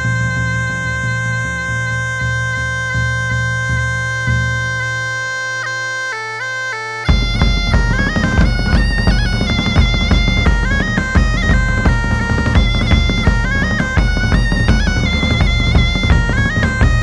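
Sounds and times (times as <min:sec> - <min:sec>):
bagpipe melody over drone: 0:00.0 - 0:17.0
drums: 0:07.1 - 0:17.0.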